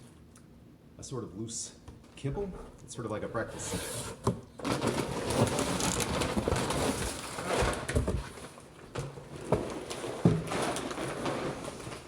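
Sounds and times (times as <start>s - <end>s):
kibble bag rustling: 4.6s - 7.8s.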